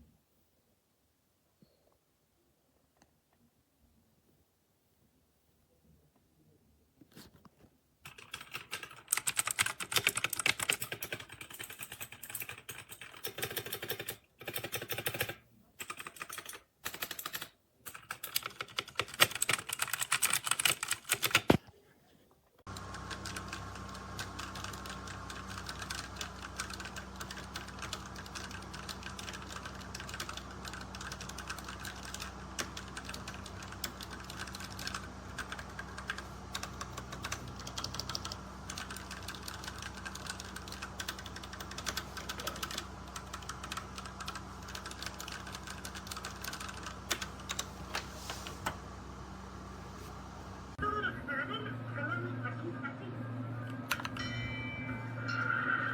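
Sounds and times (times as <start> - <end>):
mechanical keyboard typing: 8.1 - 21.6, 22.7 - 47.7
low hum: 22.7 - 55.9.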